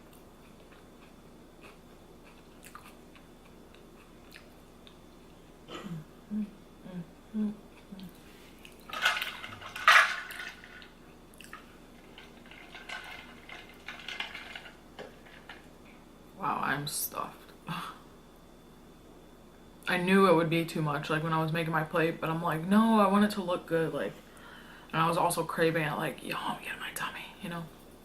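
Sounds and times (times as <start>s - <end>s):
person chewing: 0.0s - 5.0s.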